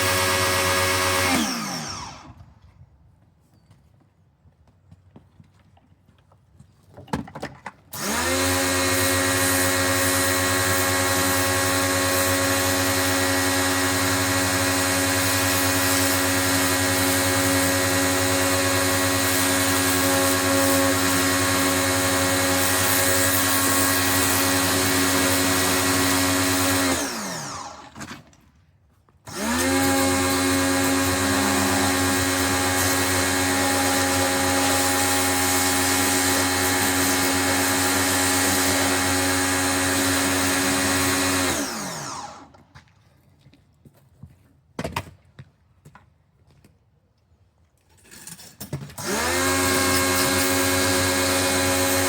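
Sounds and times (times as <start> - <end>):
motor winding down: 0.0 - 2.4, 8.0 - 28.1, 29.3 - 42.5, 49.0 - 52.0
pressure washer motor humming: 0.0 - 2.4, 8.0 - 28.0, 29.3 - 42.5, 49.0 - 52.0.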